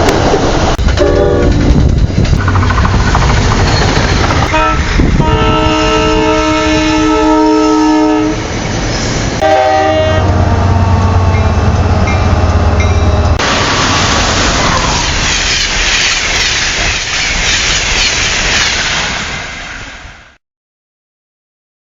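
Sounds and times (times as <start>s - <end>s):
passing train rushing noise: 0.0s - 20.4s
train air horn blasts: 1.0s - 1.6s, 4.5s - 8.4s, 9.4s - 11.7s.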